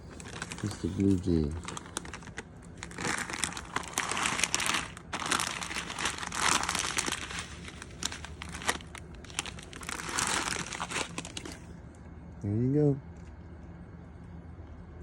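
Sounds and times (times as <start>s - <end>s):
crinkling and rustling: 0.0s - 11.7s.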